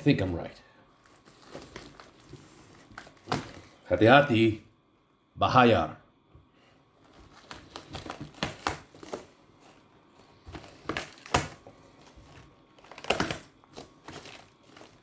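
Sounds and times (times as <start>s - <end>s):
plastic wrapping crinkling and tearing: 1.0s - 3.9s, 7.0s - 15.0s.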